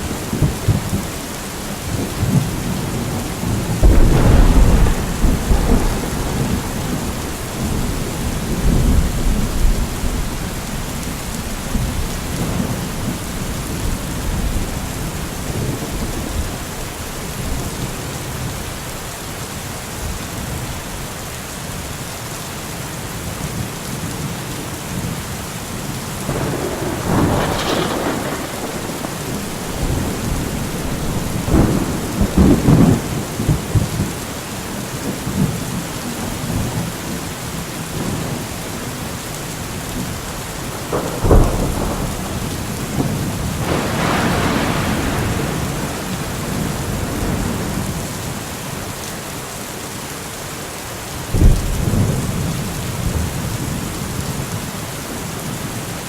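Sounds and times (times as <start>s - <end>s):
steady rain falling: 0.0s - 56.0s
thunder rolling: 1.9s - 16.6s, 26.2s - 34.2s, 39.9s - 48.1s.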